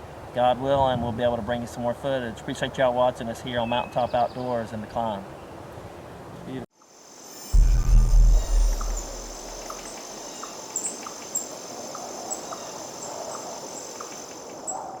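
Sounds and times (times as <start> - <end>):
short insect chirps: 6.8 - 14.9
insect trill: 6.8 - 15.0
loud low rumble: 7.6 - 9.8.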